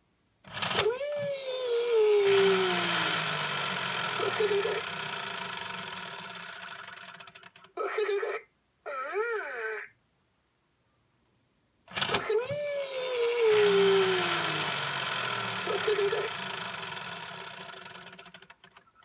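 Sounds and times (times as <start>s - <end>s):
toy pitch sliding down: 0.5s - 7.7s, 11.9s - 18.7s
toy motor whirring: 0.5s - 8.3s, 11.9s - 19.0s
toy electronic voice: 0.6s - 10.0s, 12.0s - 17.9s.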